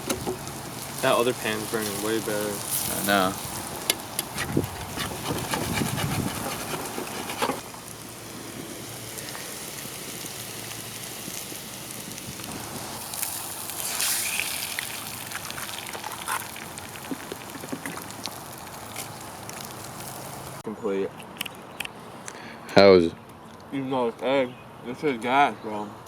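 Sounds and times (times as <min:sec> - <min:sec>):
food sizzling in a pan: 0:00.0 - 0:04.3, 0:07.6 - 0:20.6
campfire crackling and popping: 0:00.0 - 0:20.6.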